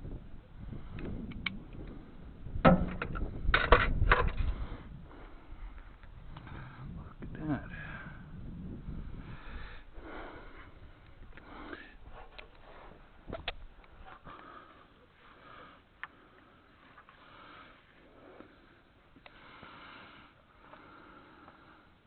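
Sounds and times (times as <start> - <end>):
sharp clicks: 0.9 - 2.0.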